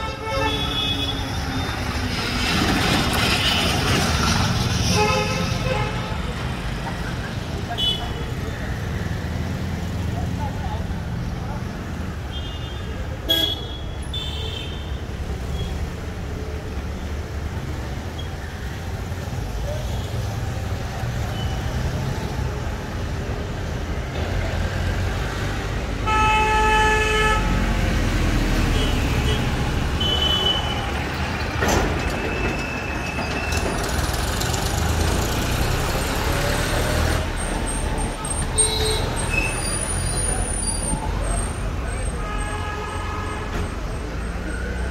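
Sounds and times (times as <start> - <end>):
vehicle horns honking: 0.0 - 1.3, 12.3 - 14.9, 26.0 - 27.6, 28.7 - 30.9
road traffic rumble: 0.0 - 44.9.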